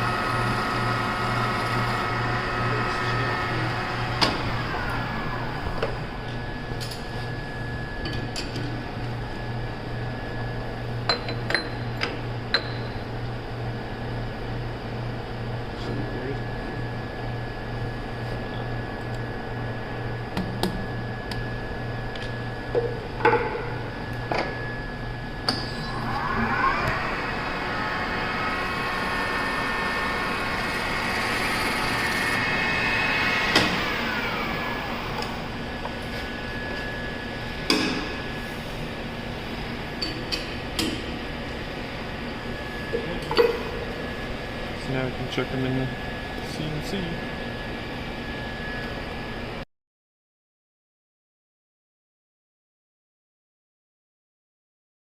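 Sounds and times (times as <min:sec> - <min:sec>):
electric motor whining: 0:00.0 - 0:06.2, 0:25.7 - 0:35.7.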